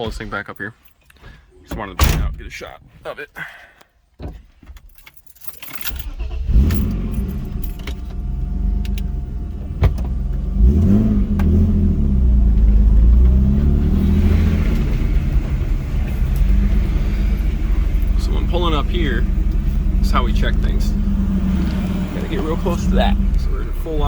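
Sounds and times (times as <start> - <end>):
car engine starting and running: 5.6 - 24.0.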